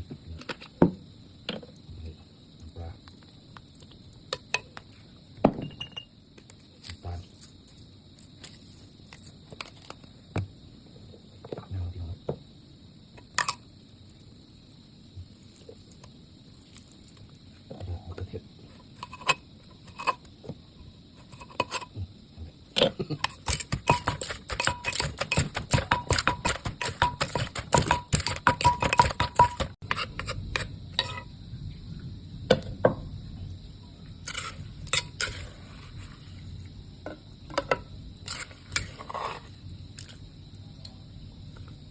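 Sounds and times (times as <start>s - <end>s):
utensils clinking: 23.2s - 30.0s
pestle pounding in a mortar: 23.2s - 30.6s.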